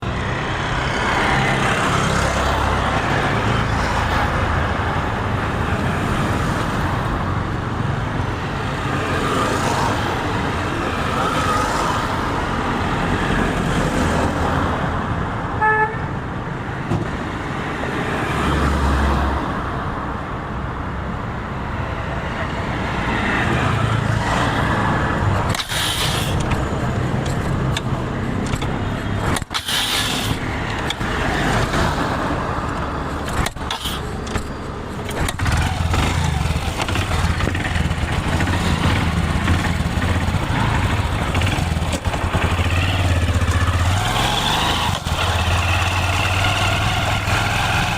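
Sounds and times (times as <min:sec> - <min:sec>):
street traffic: 0:00.0 - 0:47.9
short horn toot: 0:15.6 - 0:16.1
motorcycle engine running: 0:35.0 - 0:47.9.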